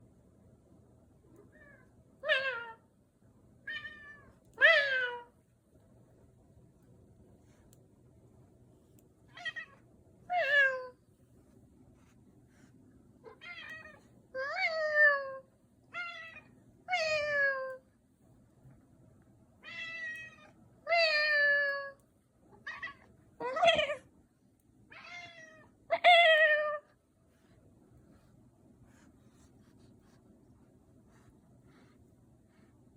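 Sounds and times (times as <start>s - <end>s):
cat meowing: 24.9s - 25.7s.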